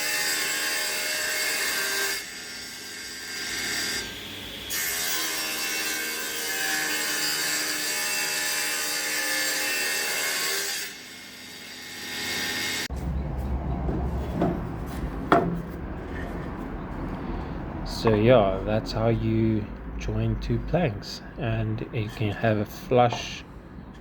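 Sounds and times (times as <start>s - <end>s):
table saw cutting board: 0.0s - 12.9s
sharp knocks: 13.0s - 16.0s.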